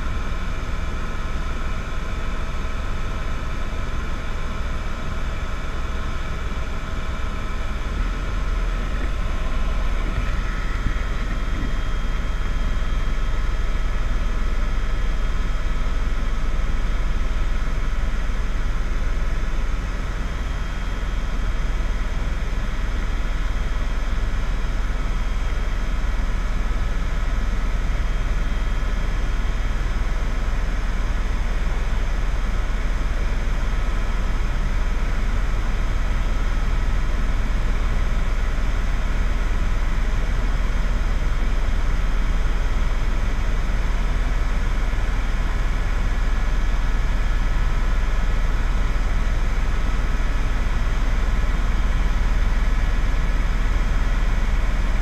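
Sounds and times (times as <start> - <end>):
vehicle drone: 7.4 - 14.1.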